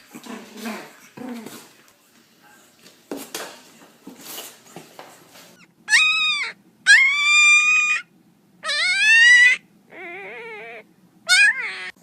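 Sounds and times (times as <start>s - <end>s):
dog whining: 5.6s - 12.0s.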